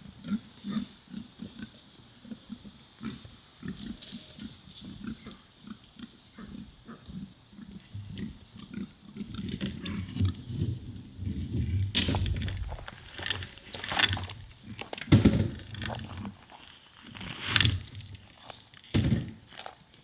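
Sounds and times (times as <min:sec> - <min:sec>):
pigs grunting: 0:00.2 - 0:16.7.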